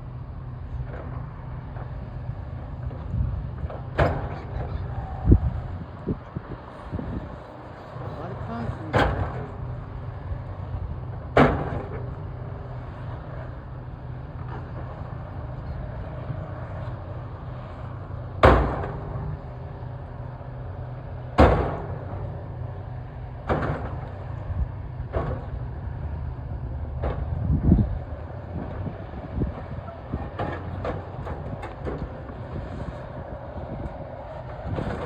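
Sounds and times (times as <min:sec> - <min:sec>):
excavator engine running: 0:00.0 - 0:35.0
heavy bangs and knocks: 0:21.3 - 0:22.4, 0:23.4 - 0:25.7.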